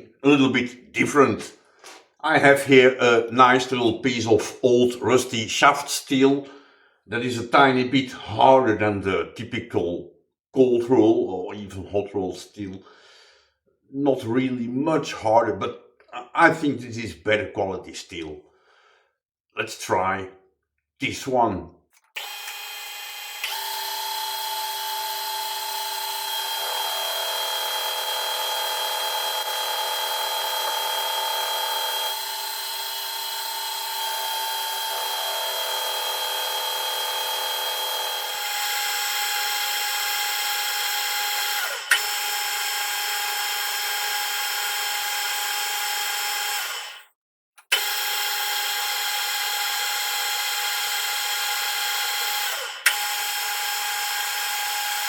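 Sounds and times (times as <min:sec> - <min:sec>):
metal lathe whining: 0:22.2 - 0:47.0, 0:47.7 - 0:55.0.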